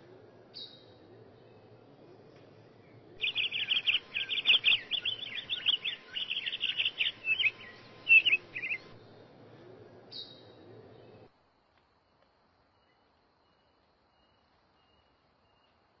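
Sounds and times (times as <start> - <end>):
bird chirping and trilling: 3.2 - 9.0.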